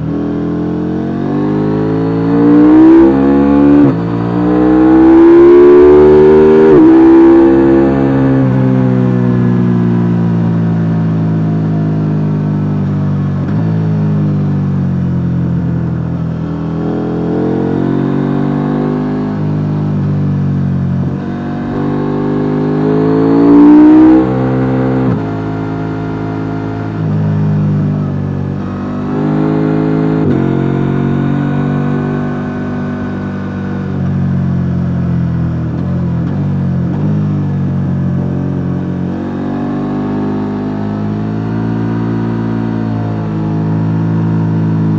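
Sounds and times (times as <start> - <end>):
motorcycle engine revving: 0.0 - 10.7, 20.8 - 34.4.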